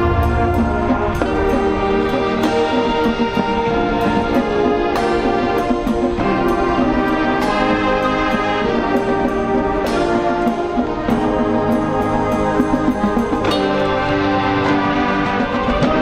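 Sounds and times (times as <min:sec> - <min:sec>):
brass sustaining chords: 0:00.0 - 0:16.0
percussion strokes: 0:00.0 - 0:16.0.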